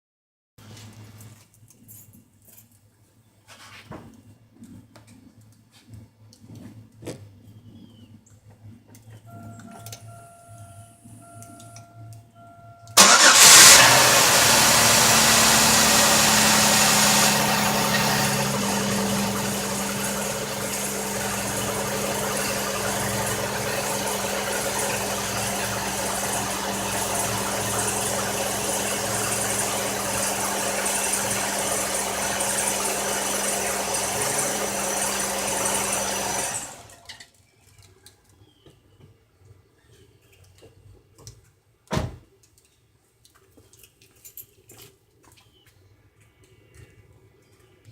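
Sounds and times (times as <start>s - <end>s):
car engine running with misfire: 13.0s - 37.2s.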